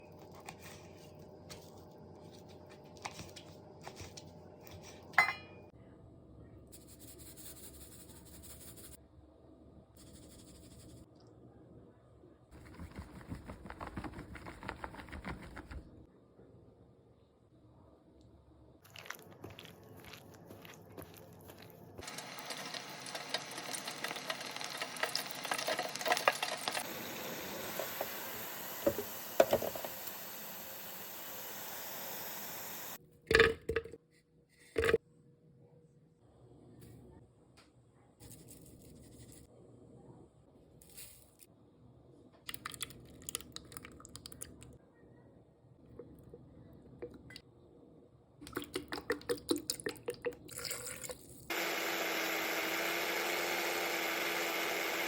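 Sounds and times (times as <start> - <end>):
kitchenware clattering: 4.8 - 5.7
chicken frying in a pan: 22.0 - 31.4.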